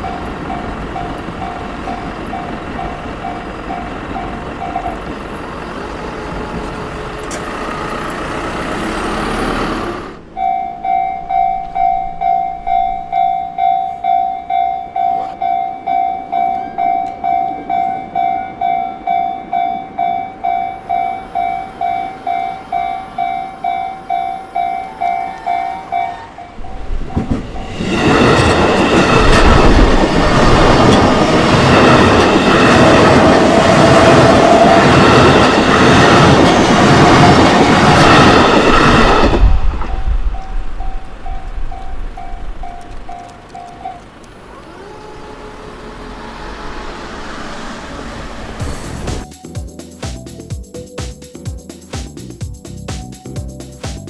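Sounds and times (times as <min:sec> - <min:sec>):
level crossing bell ringing: 0:00.0 - 0:07.3, 0:10.3 - 0:39.3
train wheels clickety-clack: 0:00.0 - 0:45.4, 0:47.2 - 0:54.0
train passing: 0:00.0 - 0:54.0.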